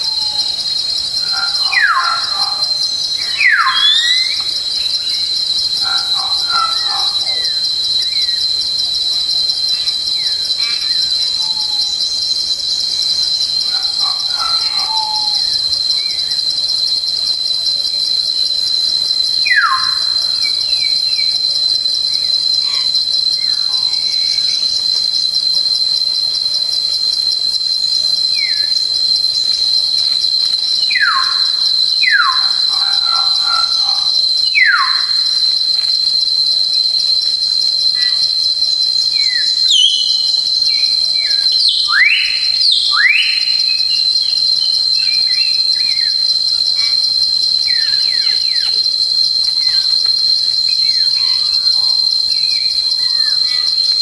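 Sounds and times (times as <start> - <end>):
high-pitched insect trill: 0.0 - 54.0
whistled bird calls: 1.6 - 4.6, 19.4 - 20.2, 39.2 - 40.3, 41.6 - 44.0.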